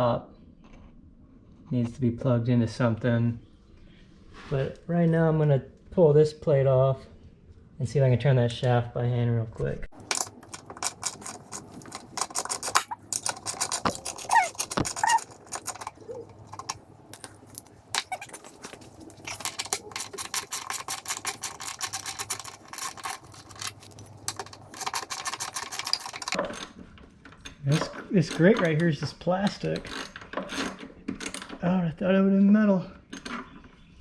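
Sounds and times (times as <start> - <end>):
ratchet wrench clicking: 10.0 - 26.4
short squeaks: 10.0 - 26.4.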